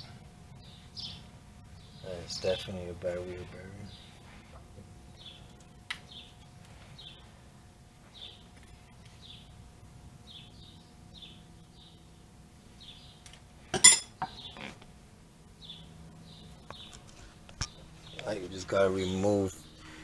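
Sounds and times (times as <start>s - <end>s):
small bird chirping: 0.0s - 2.7s, 5.1s - 7.3s, 8.1s - 9.5s, 10.3s - 12.1s, 12.8s - 13.3s, 15.6s - 17.0s.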